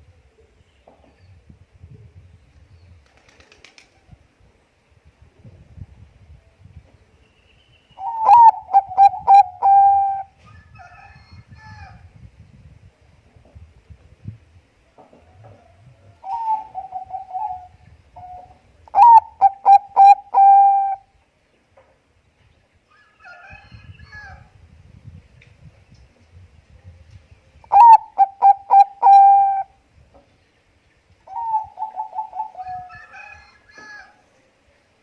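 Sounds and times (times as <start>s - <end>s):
dove cooing: 8.0s - 10.3s, 15.4s - 21.1s, 27.7s - 29.7s, 31.3s - 34.1s.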